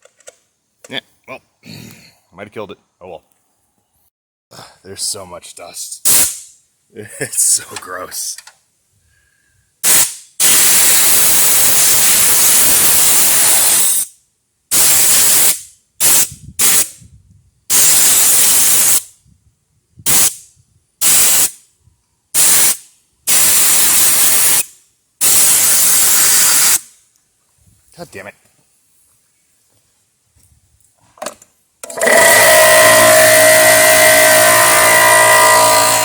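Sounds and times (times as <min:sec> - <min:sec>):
compressed air hissing bursts: 0:06.0 - 0:06.5, 0:09.8 - 0:14.1, 0:14.7 - 0:17.0, 0:17.7 - 0:19.1, 0:20.0 - 0:21.7, 0:22.4 - 0:26.9, 0:32.1 - 0:36.0.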